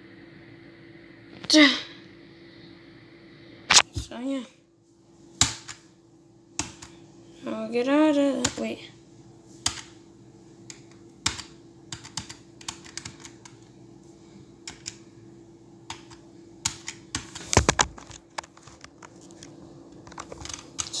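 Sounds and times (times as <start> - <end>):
faint steady hum: 0.0 - 21.0
computer keyboard clicking: 6.6 - 6.9, 9.6 - 10.0, 10.7 - 13.7, 14.6 - 15.0, 15.9 - 17.5, 20.0 - 21.0.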